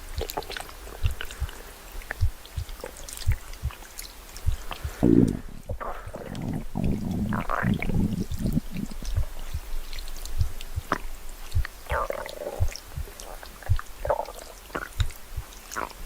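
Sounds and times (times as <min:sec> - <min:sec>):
stomach gurgling: 0:00.0 - 0:16.0
low soft thumps: 0:01.0 - 0:03.8, 0:04.4 - 0:14.2.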